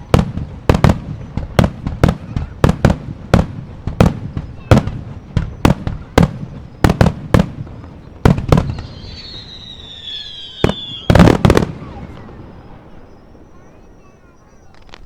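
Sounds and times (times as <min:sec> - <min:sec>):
fireworks bangs: 0:00.0 - 0:15.0
falling firework whistle: 0:04.0 - 0:15.0.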